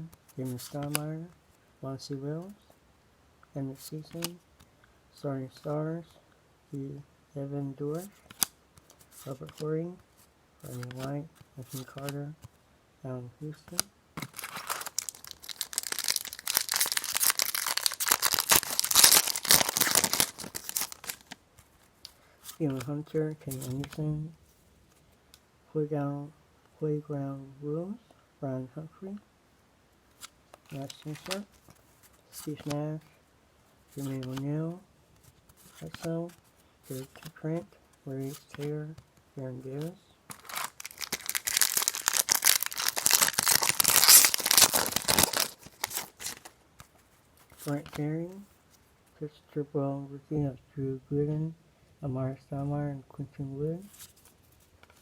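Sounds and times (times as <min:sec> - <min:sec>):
wrapper tearing and crinkling: 0:14.2 - 0:21.4, 0:30.2 - 0:31.5, 0:40.3 - 0:46.6.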